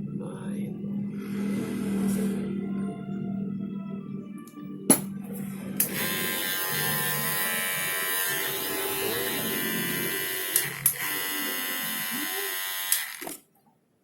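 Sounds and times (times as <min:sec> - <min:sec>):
electric clipper motor buzzing: 0:05.8 - 0:13.4.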